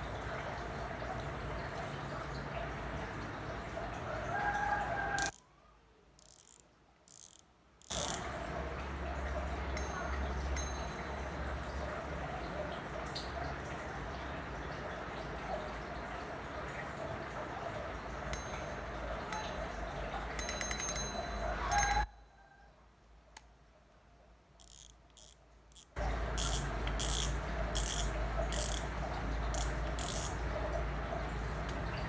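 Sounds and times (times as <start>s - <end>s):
fishing reel clicker ratcheting: 5.2s - 5.4s, 6.2s - 8.4s, 9.7s - 11.2s, 18.3s - 19.7s, 20.3s - 22.1s, 24.6s - 30.4s.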